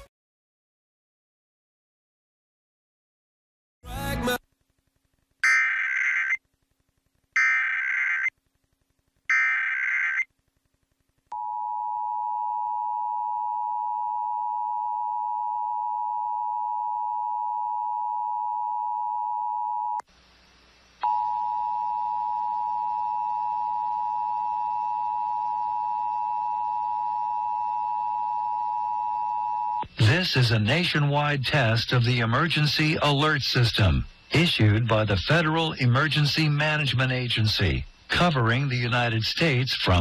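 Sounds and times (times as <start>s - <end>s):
warbling data burst: 5.4s - 6.4s, 7.4s - 8.3s, 9.3s - 10.3s.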